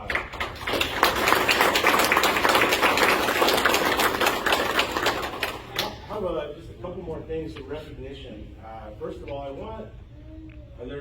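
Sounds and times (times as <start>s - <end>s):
audience applauding: 0.0s - 6.0s.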